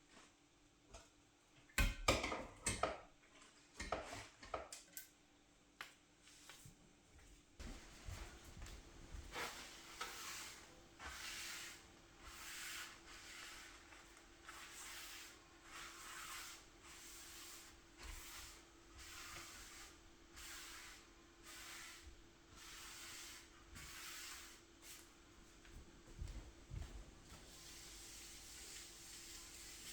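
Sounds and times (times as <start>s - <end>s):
rubbing strokes by hand: 7.6s - 25.1s, 26.8s - 29.9s.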